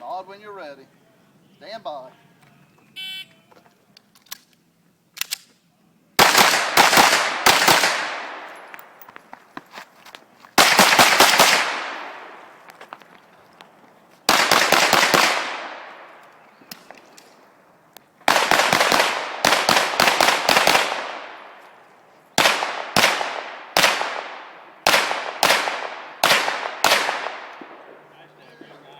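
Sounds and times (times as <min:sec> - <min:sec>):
pistol shots with echo: 0:06.2 - 0:08.7, 0:10.6 - 0:12.4, 0:14.3 - 0:16.2, 0:18.3 - 0:21.6, 0:22.4 - 0:28.1.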